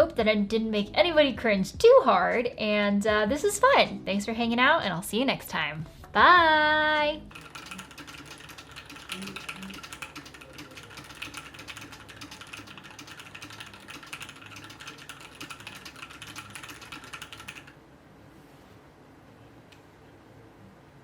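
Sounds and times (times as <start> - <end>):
mechanical keyboard key clacks: 7.3 - 17.7.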